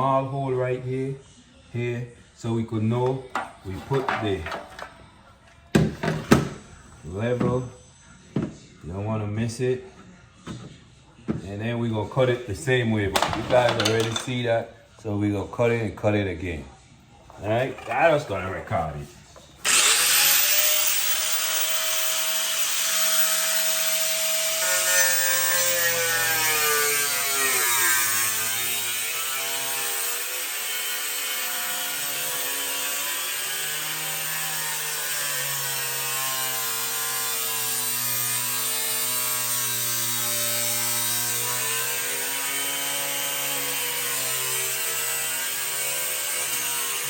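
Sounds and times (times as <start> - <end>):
electric saw cutting wood: 19.6 - 47.0.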